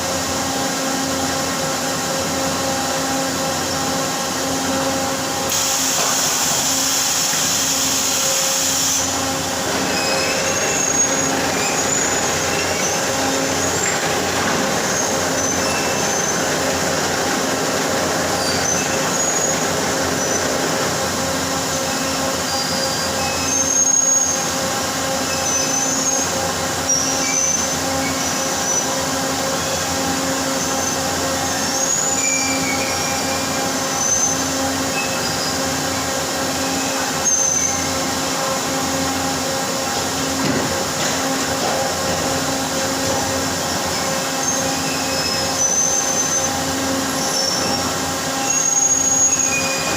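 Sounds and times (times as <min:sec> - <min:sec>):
machinery humming: 0:00.0 - 0:49.9
short high squeals: 0:06.8 - 0:14.0, 0:14.8 - 0:16.5, 0:18.4 - 0:20.5, 0:22.0 - 0:24.5, 0:30.5 - 0:35.8, 0:36.5 - 0:38.1, 0:43.5 - 0:49.9.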